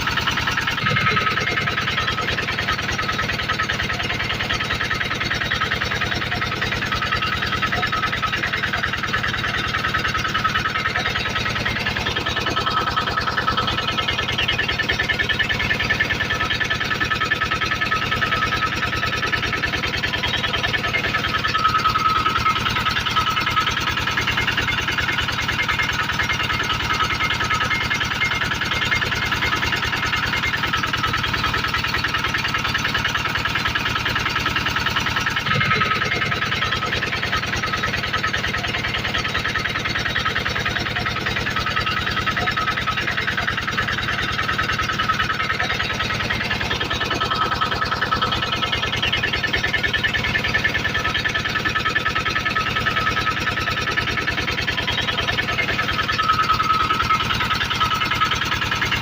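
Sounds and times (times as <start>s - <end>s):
generator engine running: 0.0s - 59.0s.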